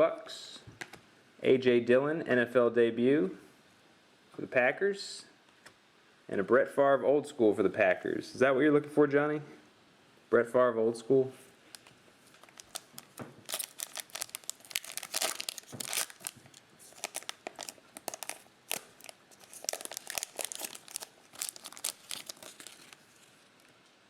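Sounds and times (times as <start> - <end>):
wrapper tearing and crinkling: 11.7 - 23.6.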